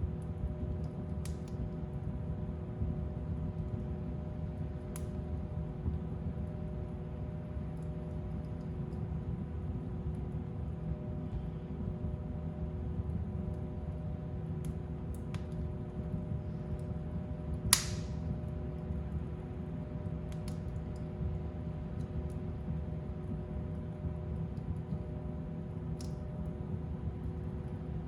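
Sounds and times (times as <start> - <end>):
fire burning in fireplace: 0.0 - 28.0
fire crackling: 0.1 - 2.2, 3.4 - 6.5, 14.5 - 28.0
loud pop from fire: 17.7 - 18.3.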